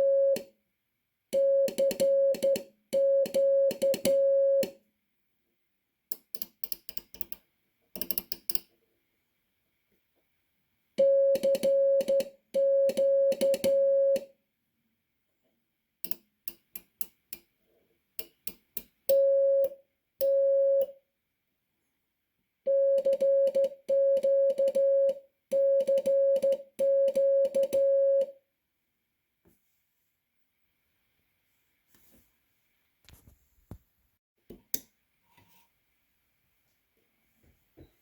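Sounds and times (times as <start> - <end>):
morse code beeps: 11.0 - 14.2, 22.7 - 28.3.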